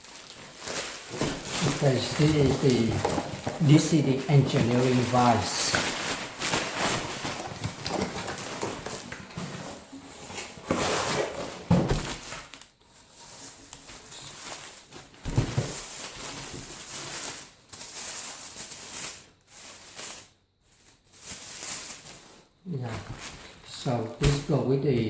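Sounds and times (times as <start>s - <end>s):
packaging crinkling and rustling: 0.0s - 25.0s
dull thumps of parts set down: 11.6s - 12.2s.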